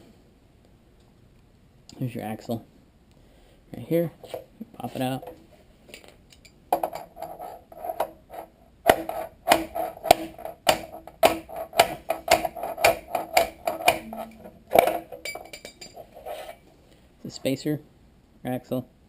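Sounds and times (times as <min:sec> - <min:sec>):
hammer striking metal axle: 0:06.8 - 0:16.4.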